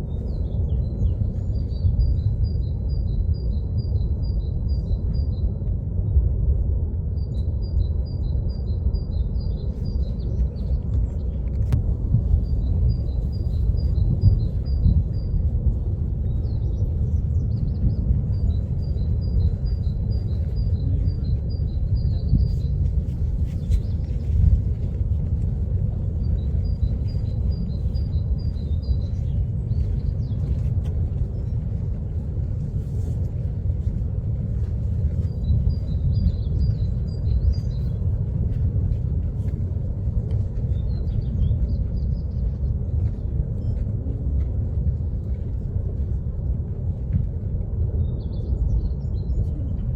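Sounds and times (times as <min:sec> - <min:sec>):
lava fountain deep rumble: 0:00.0 - 0:49.9.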